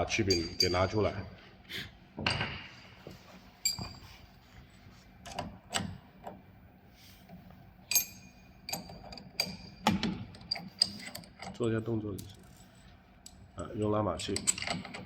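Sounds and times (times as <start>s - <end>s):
sharp ringing metal clinks: 0.2s - 1.0s.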